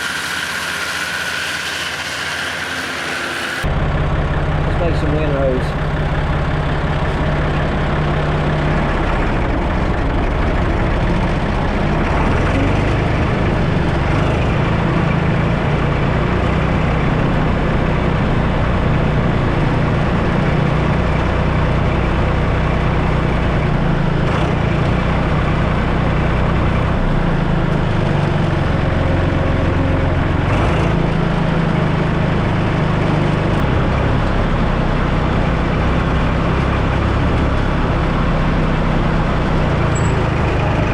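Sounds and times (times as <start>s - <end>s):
tractor engine running: 0.0s - 40.9s.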